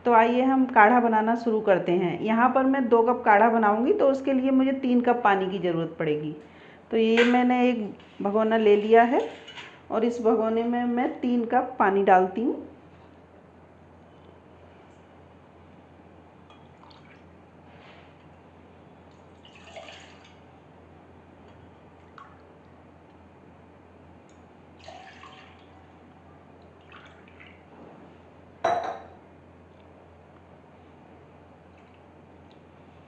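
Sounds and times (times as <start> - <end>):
water splashing into a pot: 16.5 - 17.3, 19.1 - 20.4, 24.8 - 25.9.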